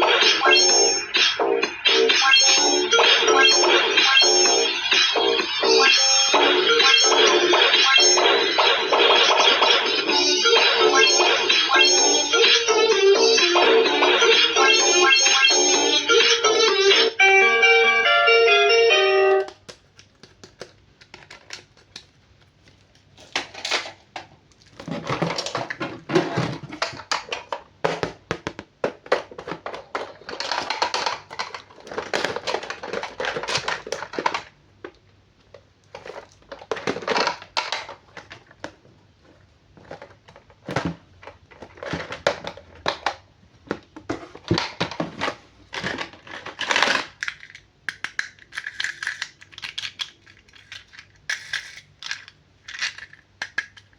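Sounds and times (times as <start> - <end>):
plastic packaging crinkling: 19.5 - 27.1, 29.4 - 34.5, 44.5 - 53.9.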